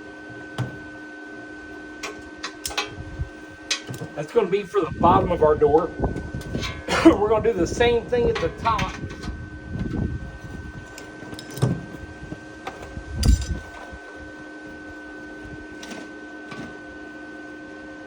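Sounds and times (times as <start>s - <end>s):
electrical hum: 0.0s - 18.0s
knocks and clunks of handling: 3.7s - 4.2s.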